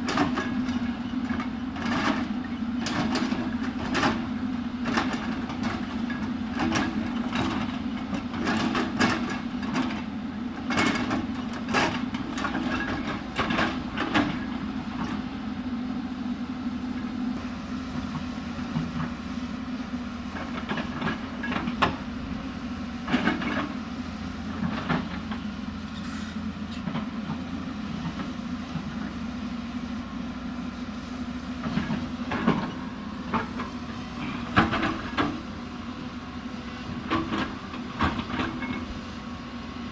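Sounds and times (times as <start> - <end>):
excavator bucket knocking and clattering: 0.0 - 15.3, 20.3 - 22.4, 23.0 - 23.8, 24.5 - 25.5, 31.6 - 36.0, 36.9 - 39.0
excavator diesel engine running: 0.0 - 39.9.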